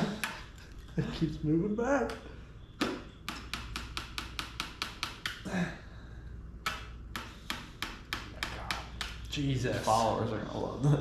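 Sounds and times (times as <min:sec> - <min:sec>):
hammer tapping: 0:00.0 - 0:00.5, 0:02.8 - 0:05.5, 0:06.6 - 0:09.3.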